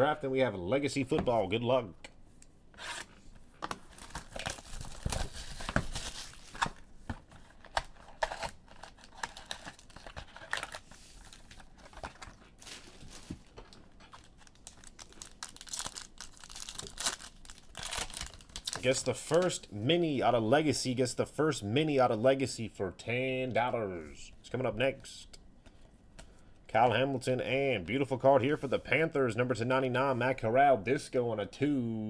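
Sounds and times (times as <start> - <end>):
plastic wrapping tearing and crinkling: 3.8 - 19.5.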